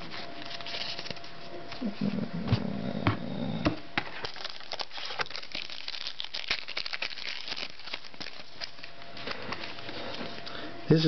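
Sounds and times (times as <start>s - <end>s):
foil wrapper crinkling: 0.0s - 1.3s, 4.1s - 10.6s.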